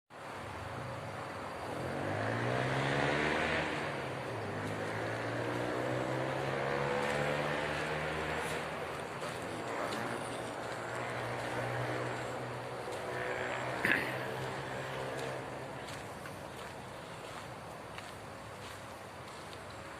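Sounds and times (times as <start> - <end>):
excavator diesel engine revving: 1.6 - 16.1.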